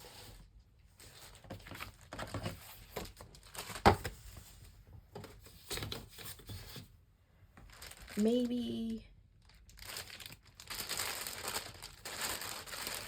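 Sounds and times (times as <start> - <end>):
small handling noises: 0.0 - 13.0
paper rustling: 9.8 - 13.0.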